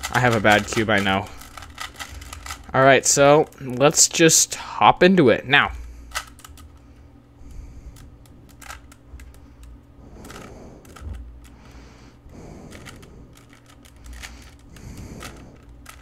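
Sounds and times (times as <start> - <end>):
plastic puzzle cube clicking: 0.0 - 2.7, 8.0 - 11.2, 12.7 - 16.0.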